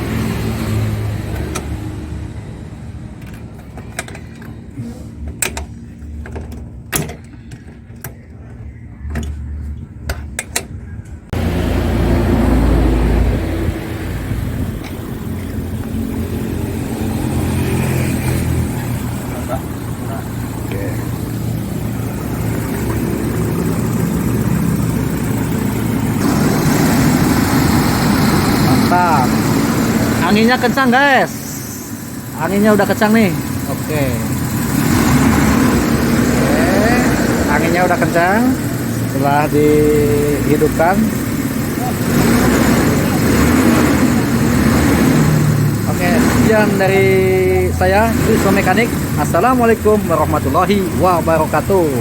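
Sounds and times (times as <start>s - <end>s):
sharp metallic clicks and knocks: 5.2s - 8.2s
cooling fan pulling air: 9.9s - 52.0s
car engine running: 11.3s - 52.0s.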